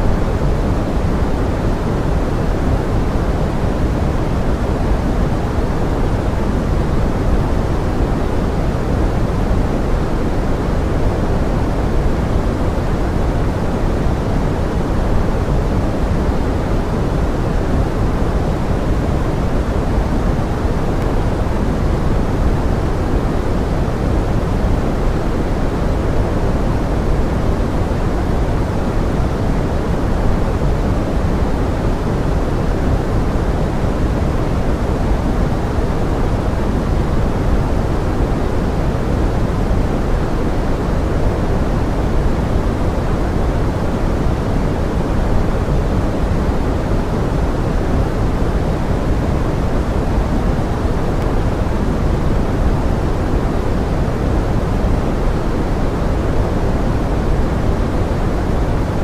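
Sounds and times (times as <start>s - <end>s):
steady pink noise hiss: 0.0s - 59.0s.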